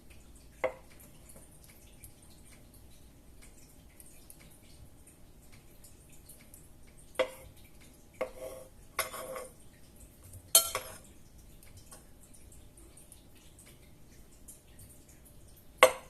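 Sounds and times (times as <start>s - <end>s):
cutlery clinking against dishes: 10.5s - 11.1s.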